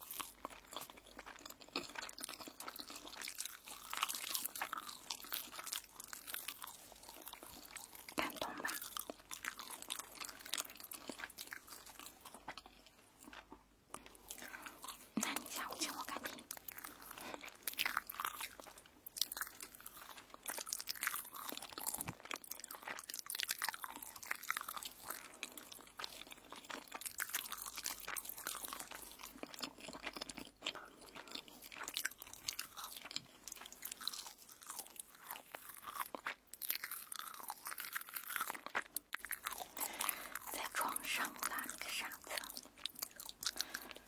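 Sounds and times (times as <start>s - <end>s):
crisp toast being chewed: 0.0s - 44.0s.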